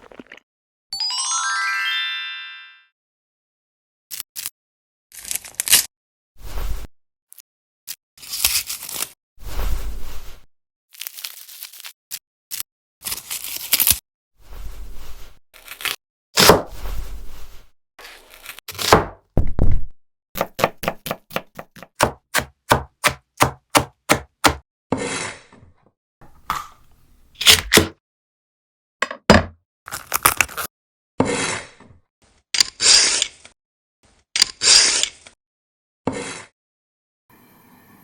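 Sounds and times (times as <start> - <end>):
knife chopping on cutting board: 16.4 - 16.8, 18.7 - 19.7, 20.4 - 24.6, 27.4 - 27.9.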